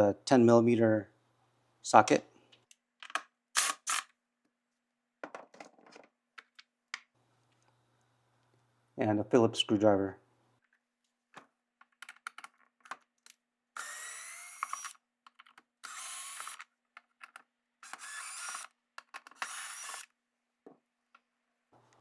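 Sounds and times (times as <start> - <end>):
power driver removing screws: 3.0 - 4.1, 13.8 - 15.0, 15.8 - 20.1.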